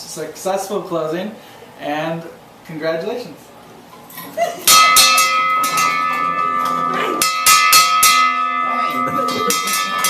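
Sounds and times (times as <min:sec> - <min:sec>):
bell clanging: 0:04.6 - 0:10.0.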